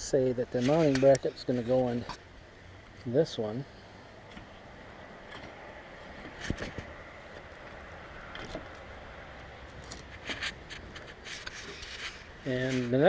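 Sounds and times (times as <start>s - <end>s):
metal clicks and scrapes: 0.6s - 2.2s, 5.3s - 8.9s, 9.7s - 13.0s.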